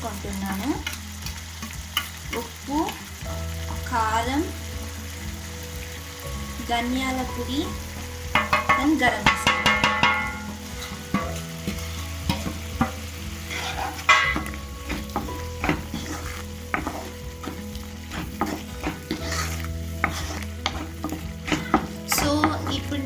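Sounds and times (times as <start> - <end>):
puree sizzling: 0.0 - 23.0
spoon scraping a pan: 7.9 - 23.0
spoon knocking a pan: 8.3 - 23.0.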